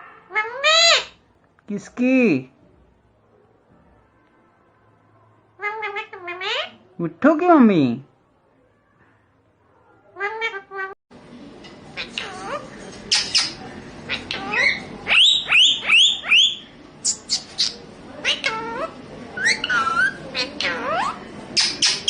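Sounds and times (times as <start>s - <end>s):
parrot squawking and whistling: 12.0s - 22.0s.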